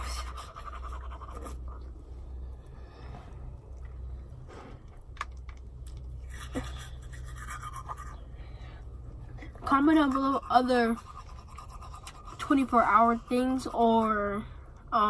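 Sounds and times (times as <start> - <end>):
teeth being brushed: 0.0 - 1.9, 6.1 - 8.2, 9.7 - 14.3
steady low hum: 0.0 - 15.0.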